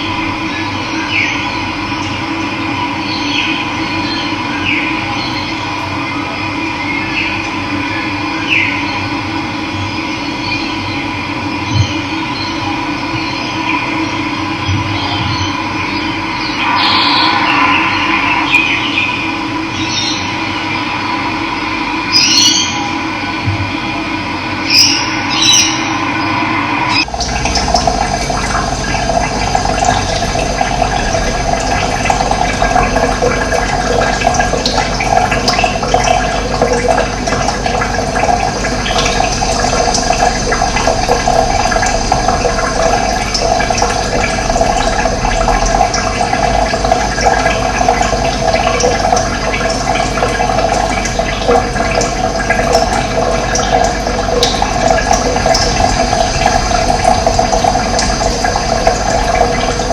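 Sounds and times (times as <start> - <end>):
high steady tones: 16.1 - 21.8
running water rushing: 16.2 - 22.8, 24.7 - 59.9.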